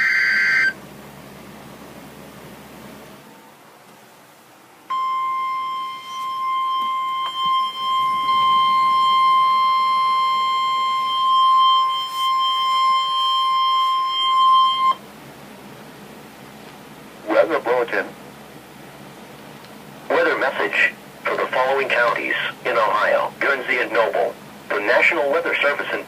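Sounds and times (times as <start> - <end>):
steady high alarm tone: 0.0 - 0.8, 4.9 - 15.0.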